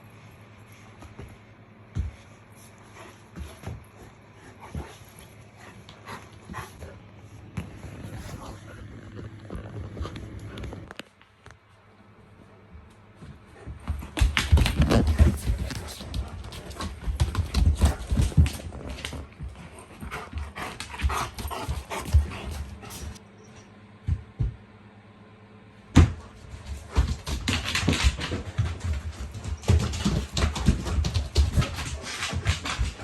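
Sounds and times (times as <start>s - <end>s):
scuffling and knocks on floor: 13.2s - 23.2s, 26.0s - 33.0s.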